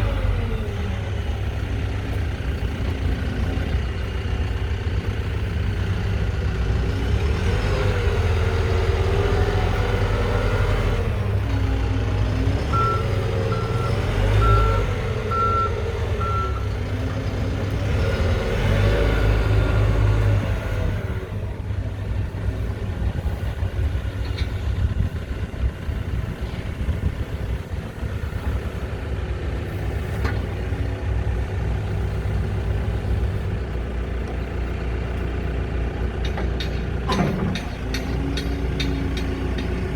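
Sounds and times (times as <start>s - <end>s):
diesel engine working: 0.0s - 39.9s
reversing alarm beeps: 12.7s - 16.7s.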